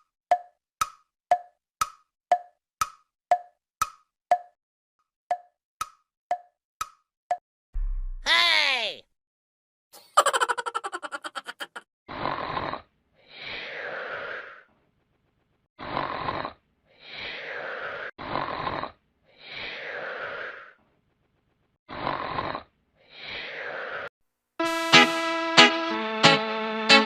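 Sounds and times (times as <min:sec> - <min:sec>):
baby snoring: 0:15.8 - 0:16.6, 0:17.2 - 0:20.2, 0:21.9 - 0:22.7.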